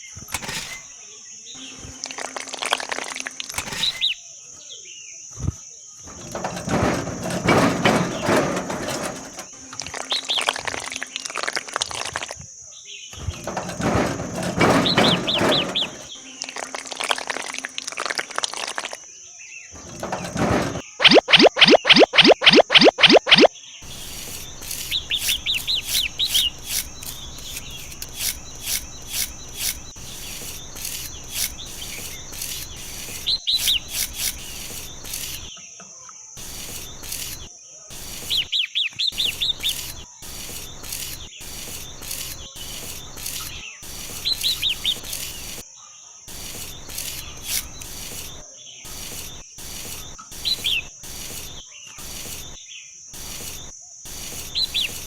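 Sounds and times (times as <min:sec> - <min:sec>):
small birds chirping: 0:18.9 - 0:45.6, 0:46.2 - 0:55.0
high-pitched hiss: 0:46.3 - 0:55.0.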